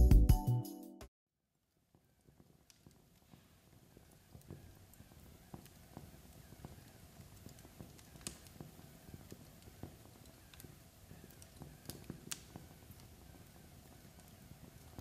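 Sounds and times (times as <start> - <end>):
log fire crackling: 1.7 - 15.0
low rumble of fire: 2.0 - 15.0.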